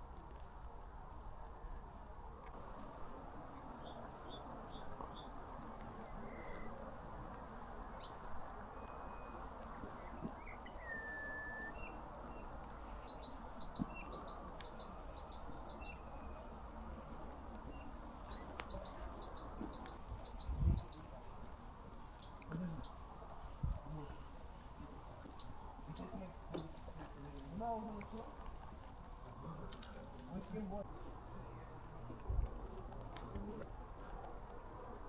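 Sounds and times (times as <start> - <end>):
small songbirds chirping: 2.6 - 28.9
steady low hiss: 2.6 - 28.9
bird whistle: 8.8 - 9.4, 10.1 - 12.0.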